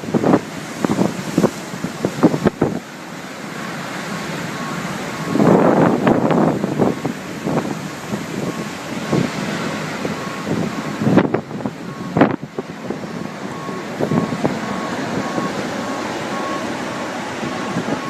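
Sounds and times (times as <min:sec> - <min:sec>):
strong wind buffeting microphone: 0:00.0 - 0:18.0
faint electronic beep: 0:04.5 - 0:05.5, 0:13.3 - 0:18.0.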